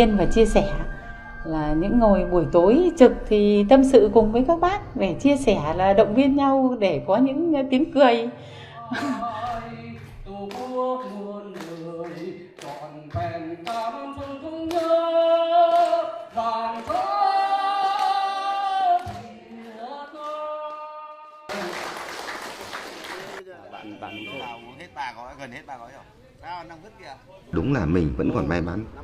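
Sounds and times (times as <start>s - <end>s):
person singing unaccompanied: 8.7s - 21.5s.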